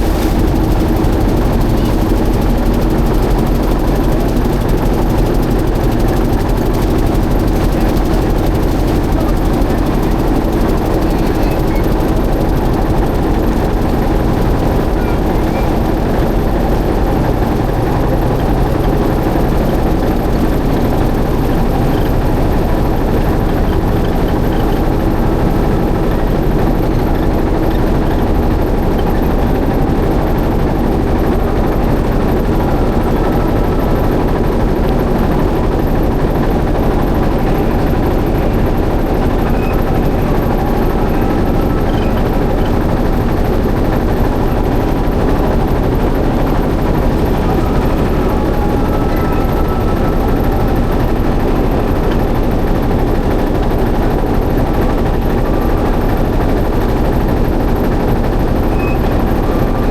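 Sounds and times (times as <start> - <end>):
boat engine running: 0.0 - 59.9.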